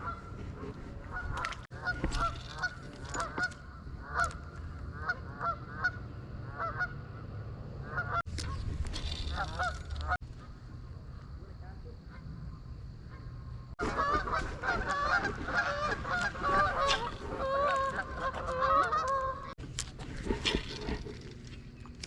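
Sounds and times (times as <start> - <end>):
geese honking: 0.0 - 10.6, 13.1 - 19.6
low wind rumble: 0.0 - 22.0.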